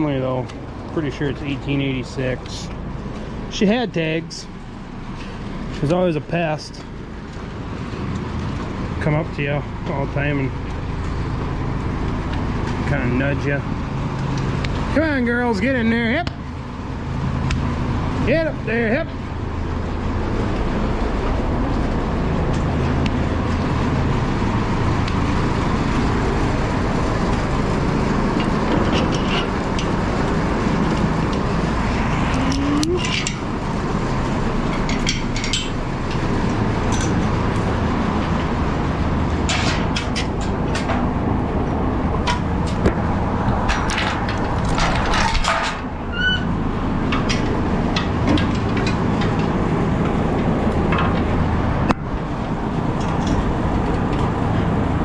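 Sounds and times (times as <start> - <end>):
machinery humming: 0.0 - 55.0.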